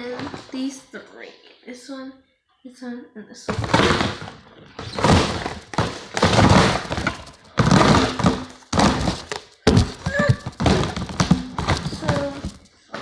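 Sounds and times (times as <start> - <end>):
plastic containers thunking and scraping: 0.0 - 0.7, 3.5 - 13.0.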